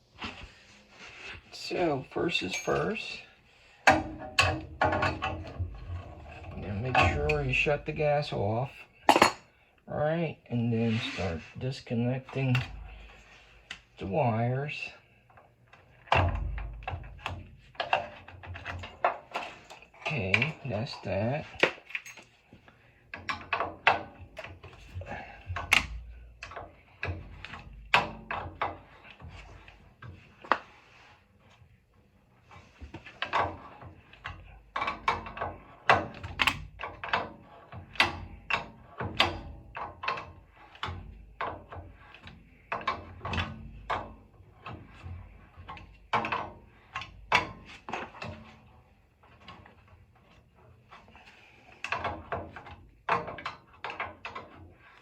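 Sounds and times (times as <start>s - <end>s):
metallic clicks and clatter of tools: 2.4s - 3.1s, 16.1s - 22.5s.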